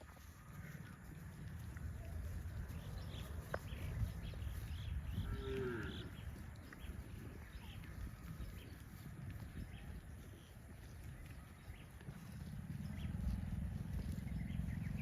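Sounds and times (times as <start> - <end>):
small birds chirping: 0.0 - 15.0
steady low rumble: 0.0 - 15.0
cow calling: 5.2 - 6.2.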